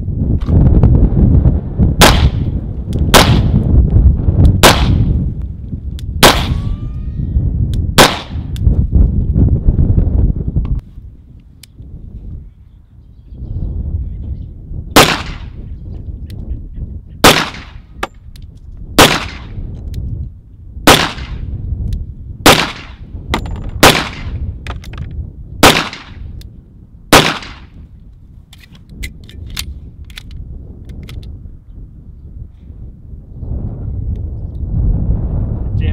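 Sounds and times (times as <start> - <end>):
pistol shots: 2.0 - 2.5, 3.1 - 3.6, 4.6 - 5.1, 6.2 - 6.7, 8.0 - 8.5, 15.0 - 15.6, 17.2 - 17.8, 19.0 - 19.6, 20.9 - 21.4, 22.4 - 23.0, 23.8 - 24.4, 25.6 - 26.2, 27.1 - 27.7.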